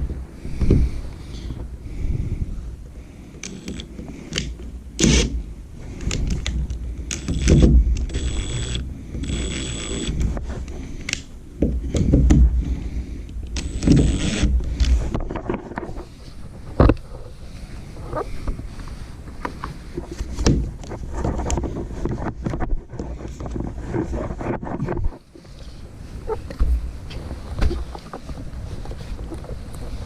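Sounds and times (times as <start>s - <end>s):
knocks clicks and scraping on wall: 6.0s - 10.5s, 11.6s - 12.7s, 13.6s - 16.1s.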